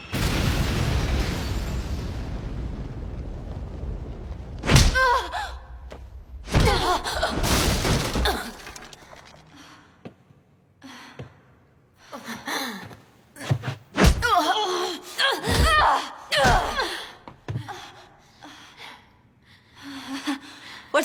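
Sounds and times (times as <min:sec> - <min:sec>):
burst of impacts: 0:00.0 - 0:09.5
crash with rumble: 0:00.0 - 0:09.5.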